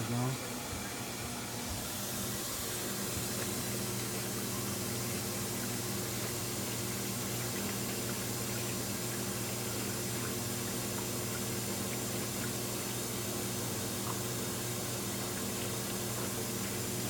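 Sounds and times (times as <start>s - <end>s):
water rushing into washer: 0.0s - 17.0s.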